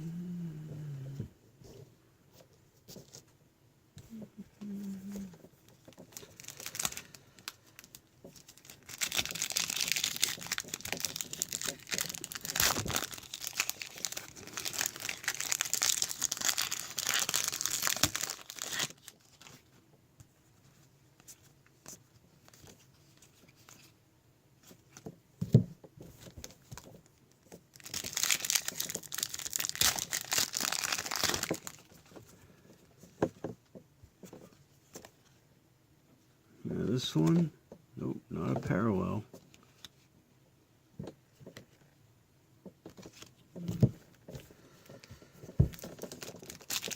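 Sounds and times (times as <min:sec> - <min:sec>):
wrappers crinkled and torn: 0:05.1 - 0:19.7, 0:27.6 - 0:32.2, 0:45.6 - 0:46.9.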